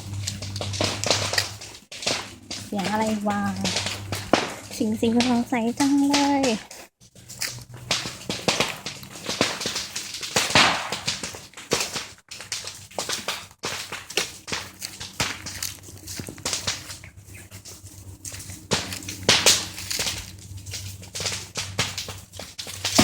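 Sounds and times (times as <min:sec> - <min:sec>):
dry bamboo leaves rustling: 0:00.0 - 0:23.0.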